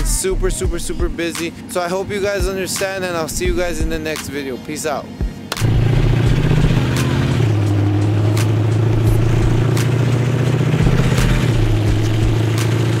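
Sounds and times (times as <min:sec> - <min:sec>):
vehicle engine running: 0:00.0 - 0:13.0
sharp clicks: 0:05.5 - 0:05.8.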